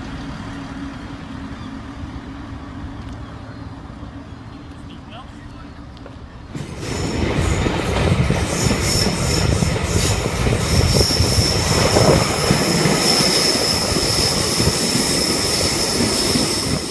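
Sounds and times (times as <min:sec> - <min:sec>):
diesel train rumbling on track: 0:00.0 - 0:16.9
high-pitched wheel squeal: 0:08.6 - 0:16.9.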